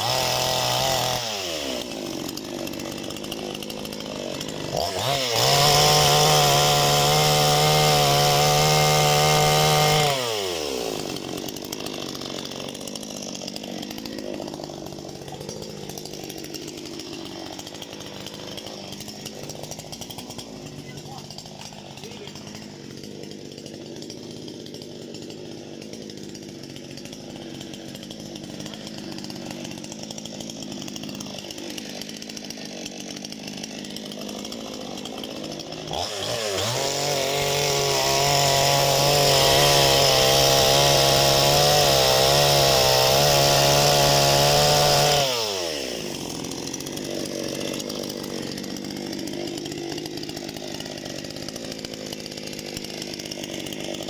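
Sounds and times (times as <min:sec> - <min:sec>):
chainsaw idling and revving: 0:00.0 - 0:54.0.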